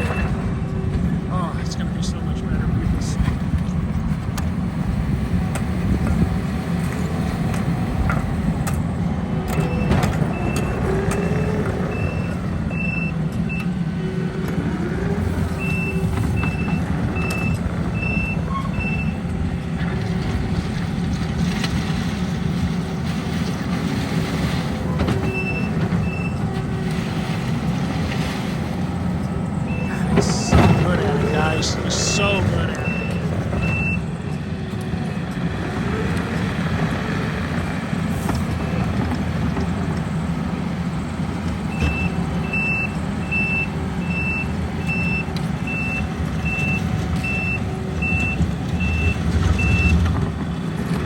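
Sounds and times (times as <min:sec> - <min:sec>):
backup alarm beeping: 0:00.0 - 0:00.4, 0:29.7 - 0:34.2
heavy machinery engines running: 0:00.0 - 0:51.0.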